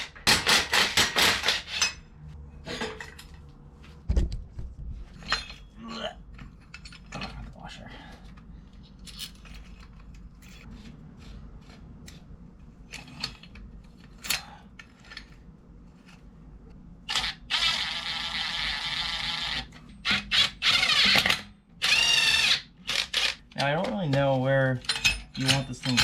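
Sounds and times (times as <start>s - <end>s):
power drill whirring: 20.4s - 23.4s.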